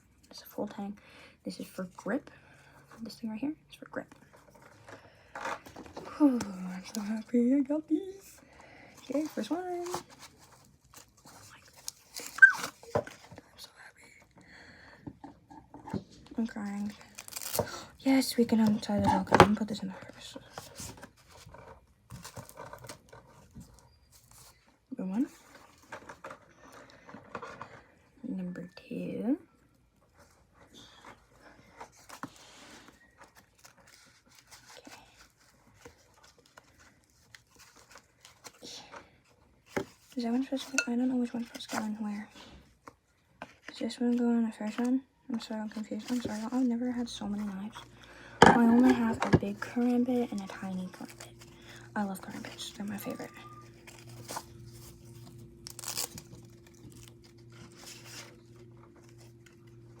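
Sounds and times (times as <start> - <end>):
packaging rustling and crinkling: 4.2 - 13.6, 16.6 - 19.7, 20.3 - 27.9, 30.2 - 40.6, 45.4 - 60.0
steady low hum: 45.8 - 60.0.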